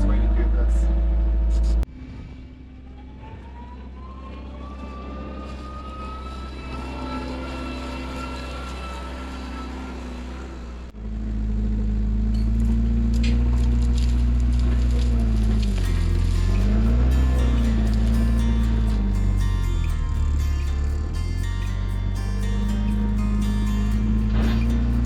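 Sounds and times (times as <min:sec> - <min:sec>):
tractor engine running under load: 0:03.8 - 0:25.0.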